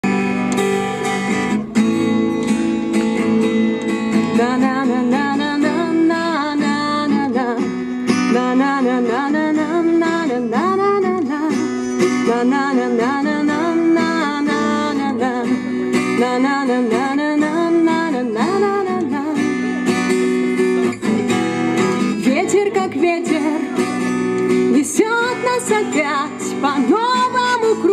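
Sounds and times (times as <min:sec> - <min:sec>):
acoustic guitar strumming chords: 0:00.0 - 0:27.9.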